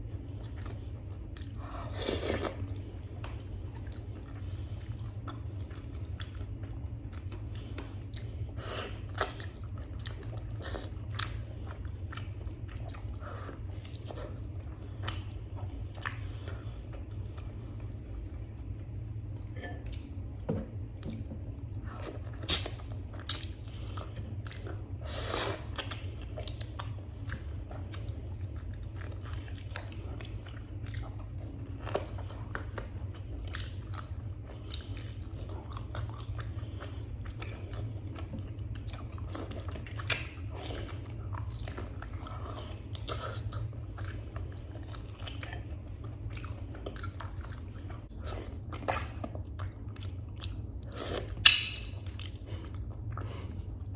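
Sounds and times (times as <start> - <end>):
steady low hum: 0.0 - 53.9
chewing and crunchy clicks: 21.0 - 53.9.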